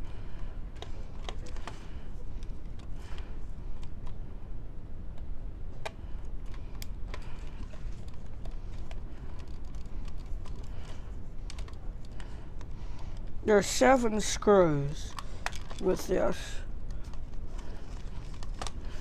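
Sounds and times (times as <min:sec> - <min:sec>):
clicks of plastic parts handled: 0:00.8 - 0:04.2, 0:05.2 - 0:13.3, 0:15.1 - 0:16.2, 0:16.8 - 0:19.0.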